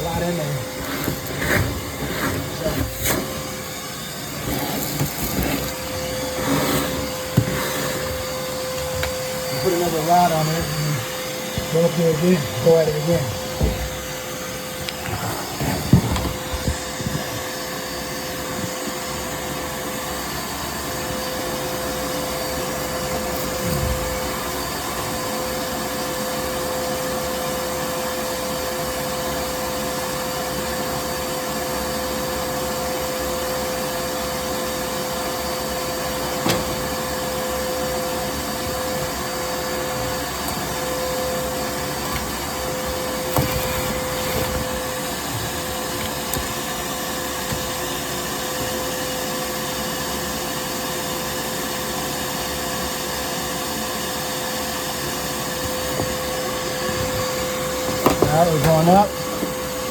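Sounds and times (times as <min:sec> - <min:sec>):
motor whining: 0:00.0 - 0:19.6, 0:21.0 - 0:25.2, 0:35.9 - 0:49.6, 0:55.0 - 0:59.9.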